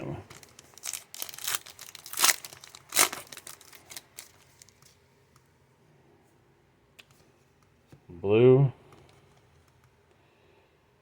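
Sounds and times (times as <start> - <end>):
card pack crinkling: 0.2 - 5.0.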